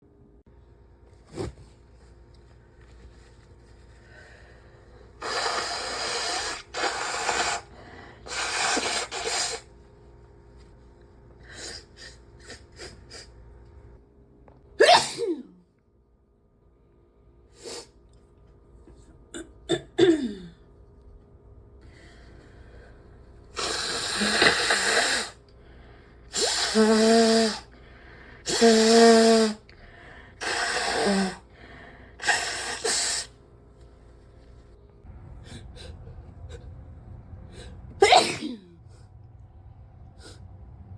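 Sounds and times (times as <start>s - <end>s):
person blowing nose: 5.2s - 9.8s, 23.5s - 25.4s, 26.3s - 27.7s, 28.4s - 29.6s, 30.4s - 31.4s, 32.2s - 33.4s
person sneezing: 14.8s - 15.6s, 32.2s - 33.3s, 38.0s - 38.8s.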